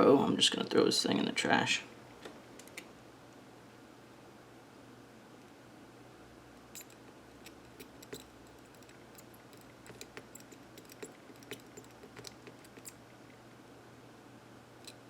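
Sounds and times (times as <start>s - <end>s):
faint steady hum: 0.0s - 15.0s
clicks of small tools and parts: 6.6s - 13.0s.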